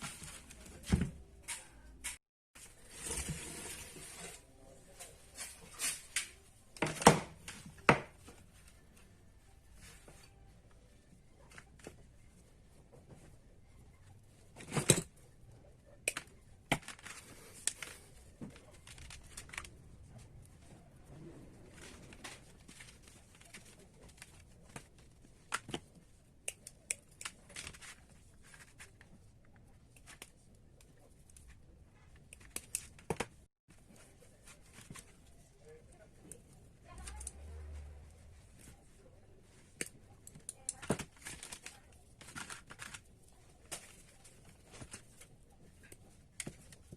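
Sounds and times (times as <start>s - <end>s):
small parts and tools handled: 14.4s - 15.3s, 38.2s - 46.9s.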